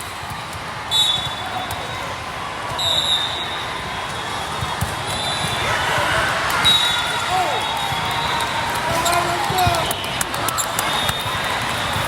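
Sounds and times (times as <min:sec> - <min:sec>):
crowd murmur: 0:00.0 - 0:12.0
sneakers squeaking on floor: 0:02.7 - 0:08.3
balls thumping: 0:04.0 - 0:06.6.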